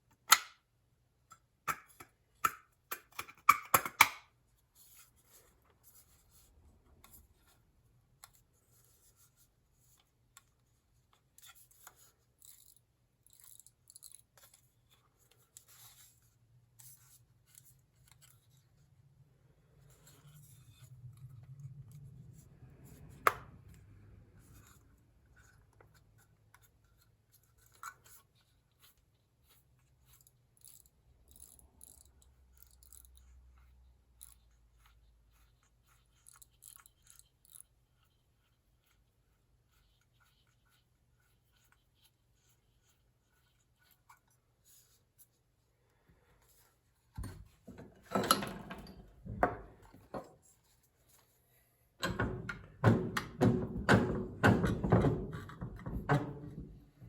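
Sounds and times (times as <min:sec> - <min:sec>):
small hard parts clicking: 0:30.1 - 0:33.2.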